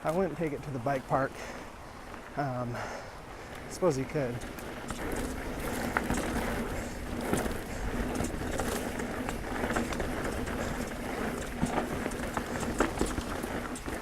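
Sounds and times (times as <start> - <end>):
tyre noise on dirt: 0.0 - 14.0
bike clicks and knocks: 4.3 - 14.0.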